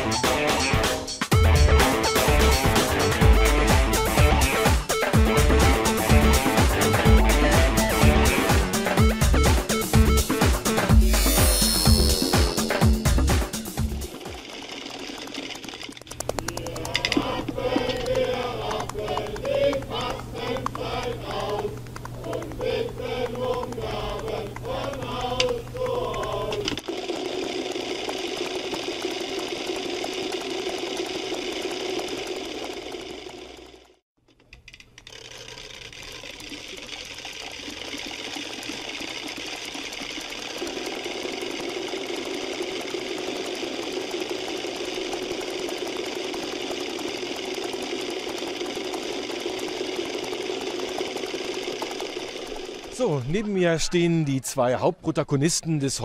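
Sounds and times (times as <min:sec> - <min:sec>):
music with singing: 0:00.0 - 0:14.2, 0:16.5 - 0:26.8.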